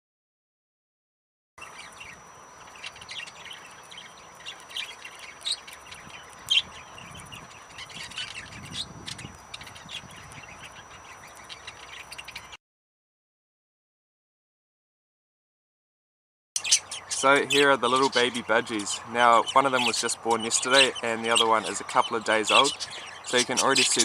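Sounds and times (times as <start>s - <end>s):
budgerigars chirping and squawking: 1.6s - 12.6s, 16.6s - 24.0s.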